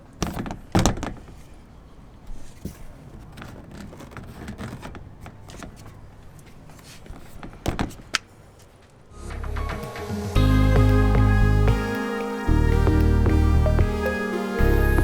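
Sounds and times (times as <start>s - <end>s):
light clicks and rustles: 0.0s - 9.0s.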